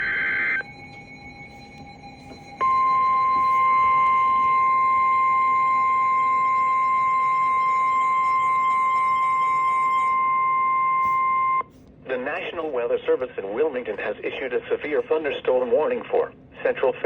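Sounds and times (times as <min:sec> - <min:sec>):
steady alarm tone: 0:00.0 - 0:11.7.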